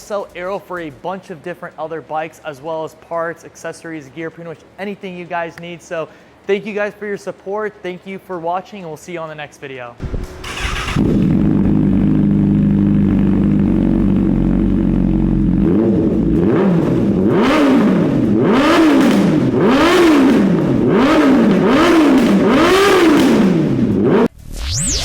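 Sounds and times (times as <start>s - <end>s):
motorcycle engine idling: 10.0s - 16.4s
motorcycle throttle revs: 10.0s - 24.3s.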